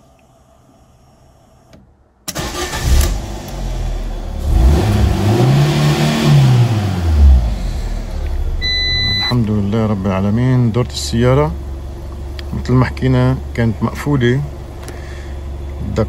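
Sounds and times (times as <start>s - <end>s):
car engine starting and revving: 2.3s - 11.6s.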